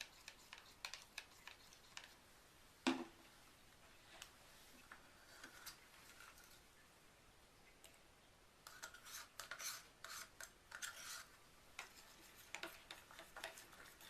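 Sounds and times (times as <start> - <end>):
small objects scraping and rubbing: 8.7 - 14.0.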